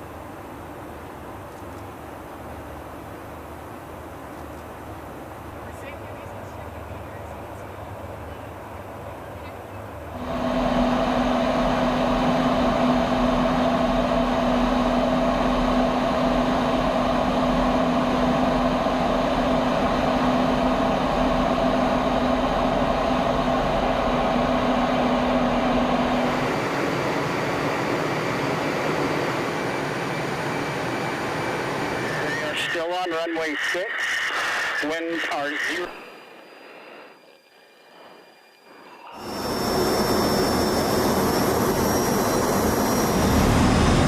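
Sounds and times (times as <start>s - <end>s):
constant low hum: 0.0s - 44.0s
high jet whine: 4.8s - 44.0s
jet noise: 9.3s - 44.0s.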